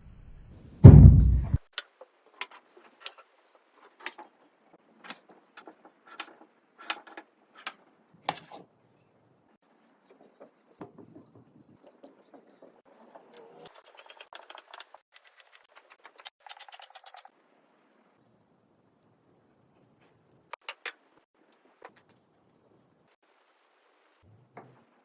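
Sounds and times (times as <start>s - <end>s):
deep boom: 0.8s - 1.6s.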